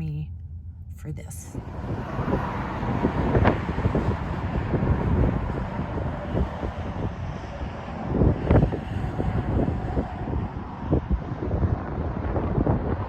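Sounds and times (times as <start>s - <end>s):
wind buffeting microphone: 1.4s - 13.0s.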